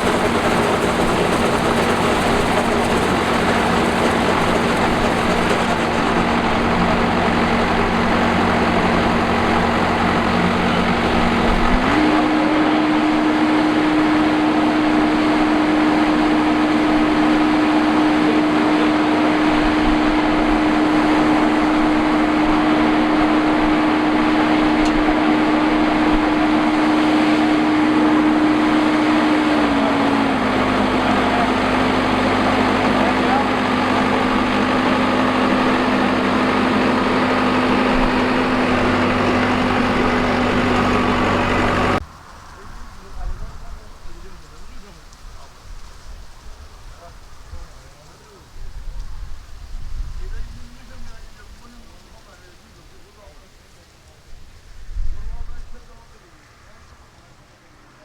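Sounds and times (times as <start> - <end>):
harvester engine running: 0.0 - 46.4.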